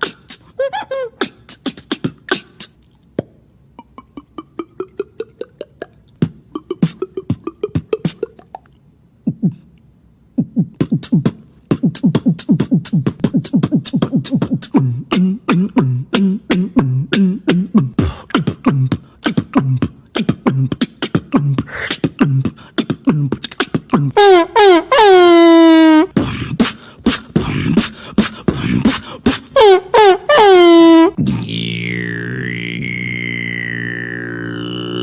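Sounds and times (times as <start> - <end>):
person beatboxing: 0.0 - 9.7, 10.4 - 24.2, 26.0 - 29.9, 31.1 - 35.0
long gliding pitched sound: 31.2 - 35.0
low hummed bass notes: 31.2 - 35.0.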